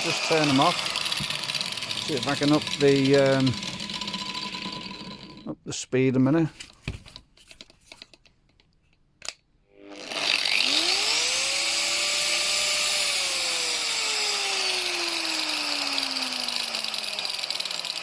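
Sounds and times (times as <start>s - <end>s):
electric grinder motor whine: 0.0s - 5.4s, 9.7s - 18.0s.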